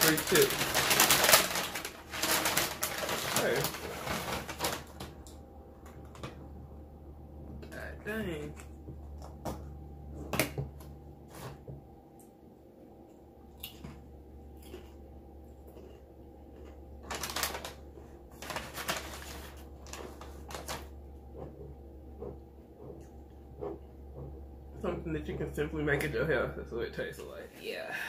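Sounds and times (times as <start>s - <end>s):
chips being bitten and chewed: 13.6s - 20.9s.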